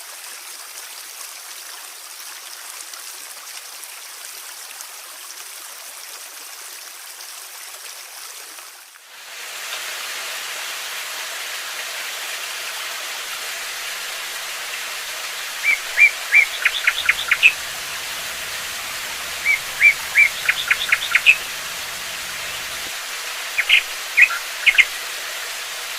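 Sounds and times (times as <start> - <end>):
flowing water rushing: 8.8 - 25.9
songbird singing: 13.5 - 25.9.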